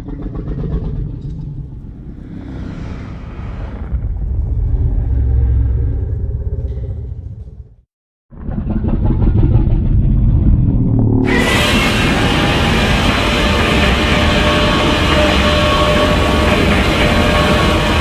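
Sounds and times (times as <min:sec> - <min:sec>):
deep rumbling monster roar: 0:00.0 - 0:07.7, 0:08.4 - 0:18.0
hissing layer: 0:11.3 - 0:18.0.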